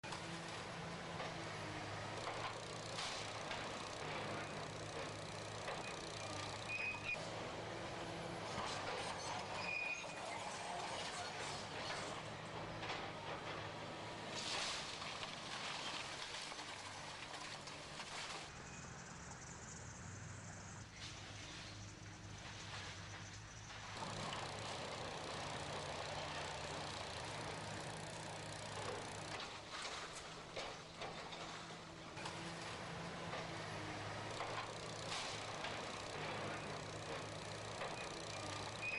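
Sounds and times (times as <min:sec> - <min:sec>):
heavy machine engine running: 0:00.0 - 0:38.9
high squeals: 0:06.6 - 0:07.2
debris clattering and knocking: 0:28.7 - 0:32.6.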